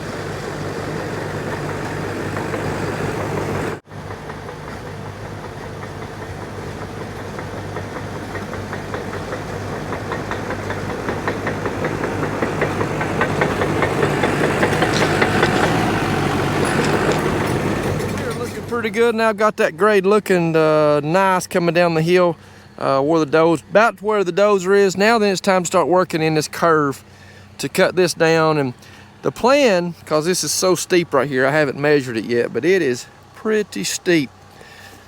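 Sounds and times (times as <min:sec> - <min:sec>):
rapid clatter: 0:00.0 - 0:18.9
bulldozer diesel engine running: 0:00.0 - 0:35.0.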